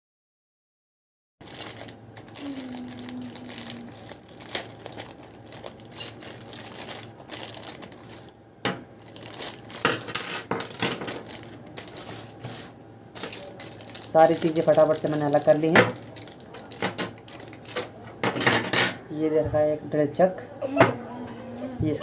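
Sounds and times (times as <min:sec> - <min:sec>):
small metal parts clinking: 0:01.4 - 0:01.9, 0:04.6 - 0:08.3, 0:09.1 - 0:11.4
plastic packaging crinkling: 0:01.4 - 0:09.9, 0:11.0 - 0:18.0.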